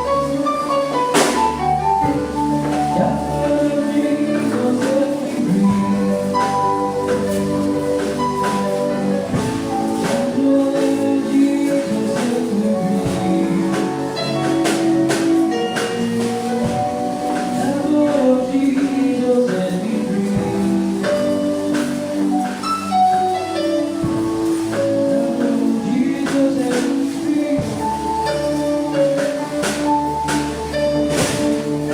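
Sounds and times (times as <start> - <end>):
sustained worship music chords: 0.0 - 31.9.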